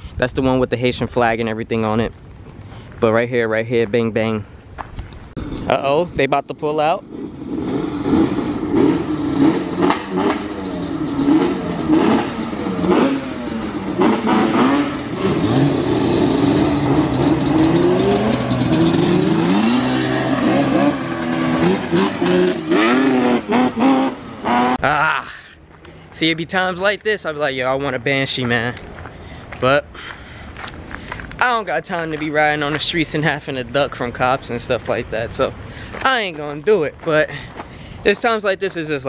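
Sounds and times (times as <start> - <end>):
quad bike engines revving: 5.4 - 25.0.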